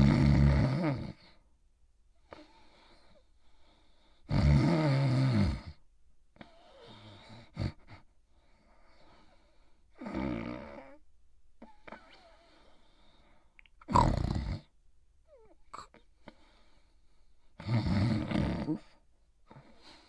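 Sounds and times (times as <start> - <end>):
cartoon dog snoring: 0.0 - 1.4, 4.2 - 5.8, 10.0 - 11.0, 13.9 - 14.7, 17.6 - 19.0.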